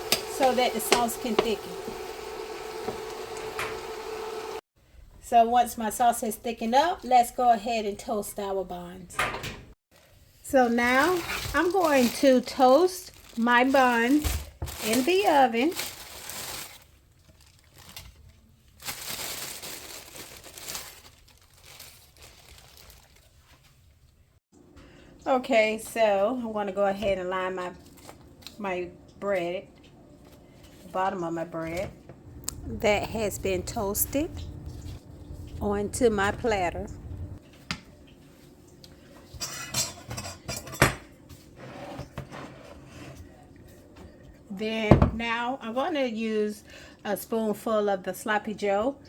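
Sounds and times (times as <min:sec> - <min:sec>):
packaging crinkling and rustling: 0:10.8 - 0:24.1
dishes and utensils clinking: 0:39.3 - 0:41.1.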